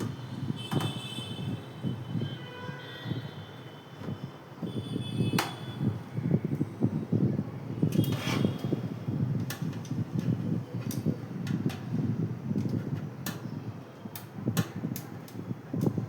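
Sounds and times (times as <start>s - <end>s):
handling and rubbing noise: 8.0s - 9.0s.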